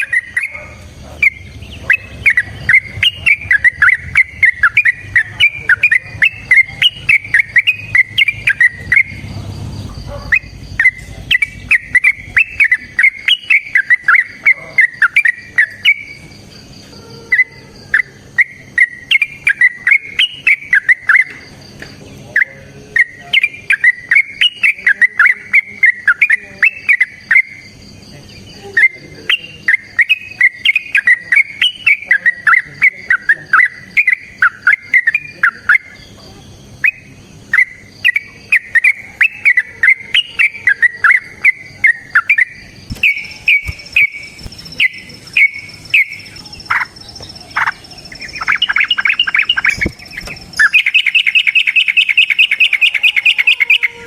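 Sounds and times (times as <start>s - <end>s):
bird singing bubbly whistles: 0.0s - 16.2s, 17.3s - 21.4s, 36.8s - 54.0s.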